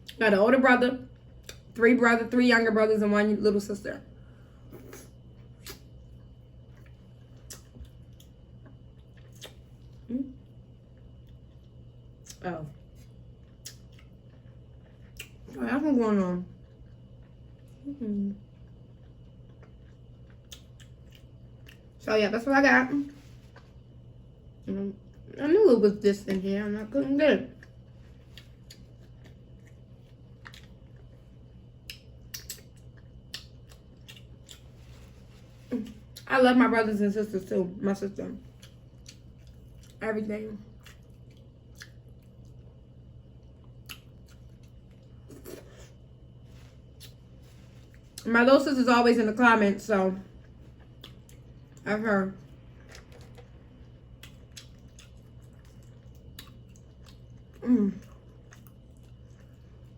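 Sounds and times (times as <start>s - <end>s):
faint steady hum: 0.0s - 59.9s
person chewing seafood: 18.9s - 21.9s, 27.6s - 31.2s, 31.8s - 35.0s, 38.6s - 40.0s, 40.8s - 42.8s, 43.4s - 48.2s, 50.5s - 51.8s, 52.7s - 59.9s.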